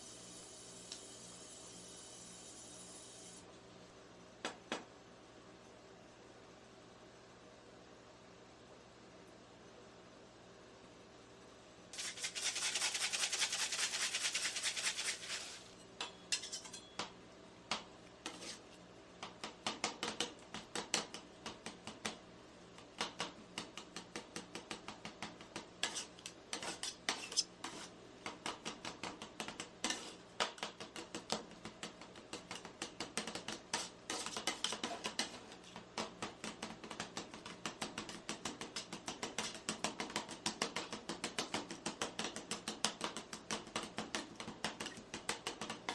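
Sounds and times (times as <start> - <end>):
metal spatulas clanking on plate: 16.0 - 17.0.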